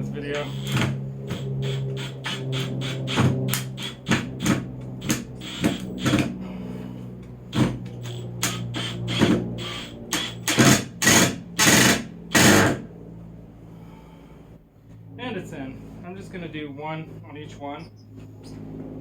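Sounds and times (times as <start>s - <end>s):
power drill driving screw into wood: 0.4s - 6.4s, 7.5s - 12.8s.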